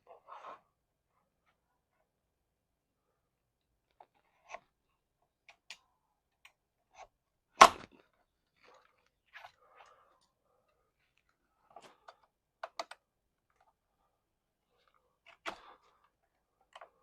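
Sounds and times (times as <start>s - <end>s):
faint clicks and taps: 11.1s - 13.8s.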